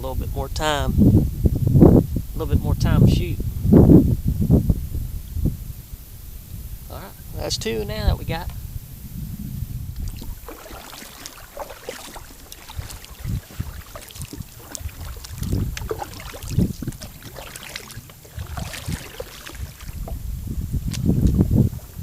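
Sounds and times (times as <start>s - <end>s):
low thumps: 8.4s - 22.0s
paddle strokes splashing water: 10.0s - 22.0s.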